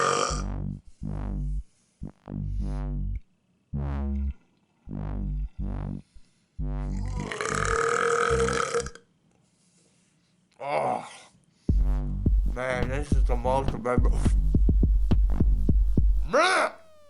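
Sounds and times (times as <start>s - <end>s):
long loud belch: 0.0s - 0.4s, 7.0s - 9.0s
electronic music with synth bass: 0.3s - 3.2s, 3.8s - 7.6s, 11.7s - 17.0s.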